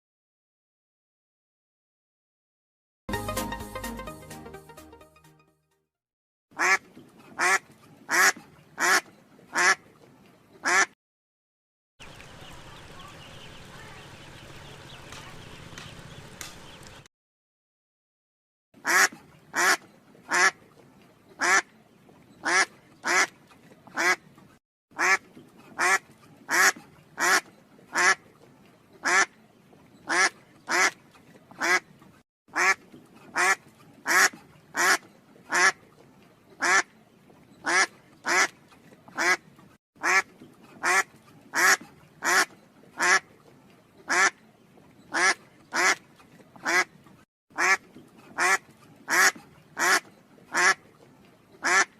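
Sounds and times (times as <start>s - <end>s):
duck quacking: 6.6s - 6.8s, 7.4s - 9.9s, 10.6s - 11.0s, 18.8s - 20.6s, 21.4s - 21.7s, 22.4s - 23.3s, 23.9s - 24.2s, 25.0s - 28.2s, 29.0s - 29.3s, 30.1s - 31.8s, 32.5s - 35.8s, 36.6s - 36.9s, 37.6s - 38.5s, 39.1s - 39.4s, 40.0s - 43.3s, 44.1s - 44.4s, 45.1s - 46.0s, 46.6s - 46.9s, 47.6s - 50.8s, 51.6s - 51.9s.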